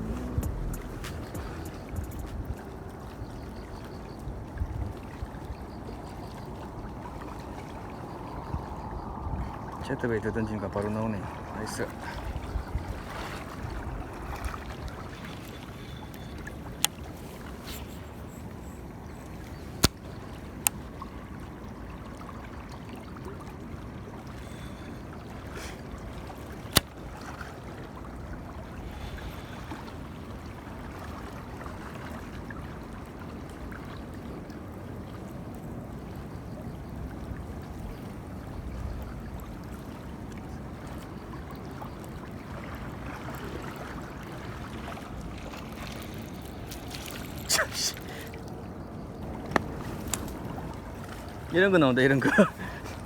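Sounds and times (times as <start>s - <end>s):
steady water noise: 0.0s - 53.0s.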